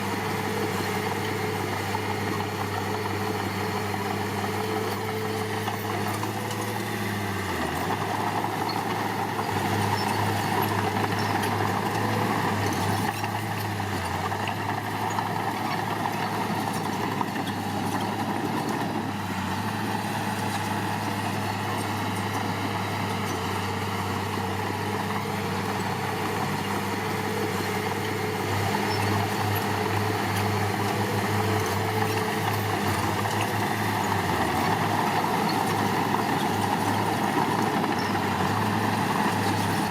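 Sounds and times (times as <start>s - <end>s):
diesel engine humming: 0.0s - 39.9s.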